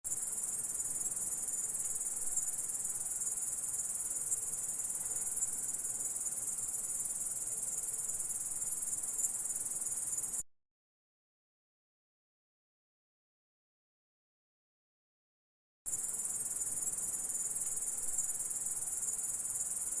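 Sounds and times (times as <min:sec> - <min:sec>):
insect high-pitched buzzing trill: 0:00.1 - 0:10.4, 0:15.9 - 0:20.0.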